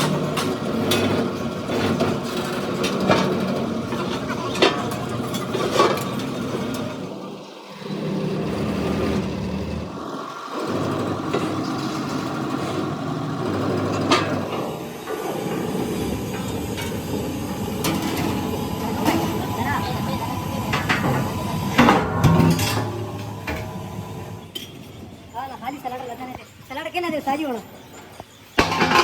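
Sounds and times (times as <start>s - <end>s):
machine engine humming: 0.0s - 26.2s.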